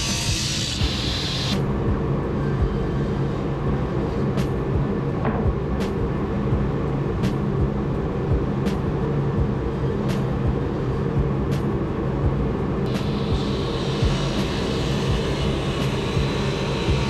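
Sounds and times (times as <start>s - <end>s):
woodworking machine humming: 0.0s - 1.6s, 12.9s - 17.0s.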